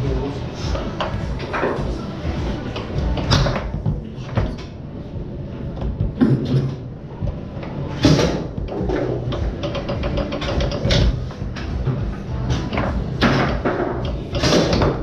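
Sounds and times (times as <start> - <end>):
foosball ball knocks and clacks: 2.6 - 4.8, 7.9 - 15.0.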